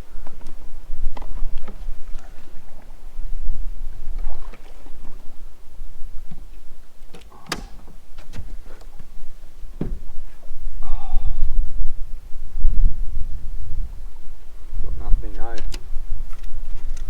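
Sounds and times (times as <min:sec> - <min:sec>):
steady low rumble: 0:09.1 - 0:16.2
fishing gear knocking on boat hull: 0:09.7 - 0:10.4.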